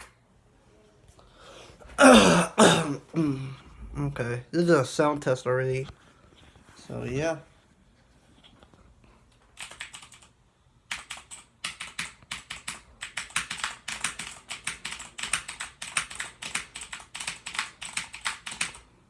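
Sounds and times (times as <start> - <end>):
mechanical keyboard typing: 9.6 - 18.9.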